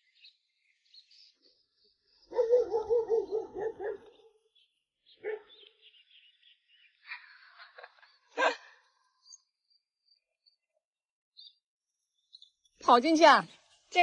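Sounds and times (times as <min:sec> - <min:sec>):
dog barking: 0:02.3 - 0:04.4, 0:05.2 - 0:05.6.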